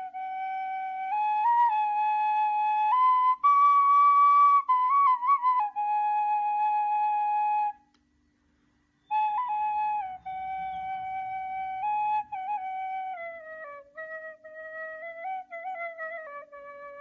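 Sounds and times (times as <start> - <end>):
reed flute melody: 0.0 - 8.0, 8.6 - 17.0.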